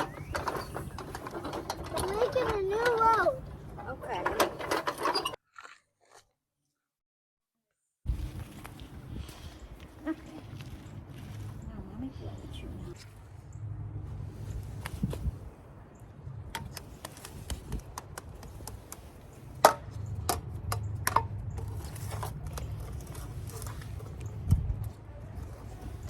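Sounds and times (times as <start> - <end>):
toy trucks clicking and scraping: 0.0 - 5.4, 16.6 - 25.8.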